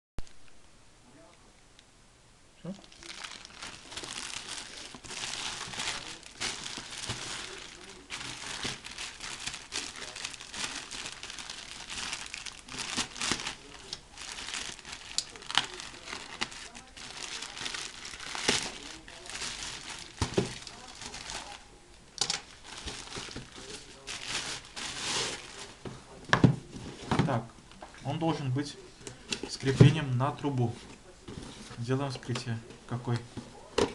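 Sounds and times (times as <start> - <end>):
packaging crinkling and rustling: 2.8 - 27.4.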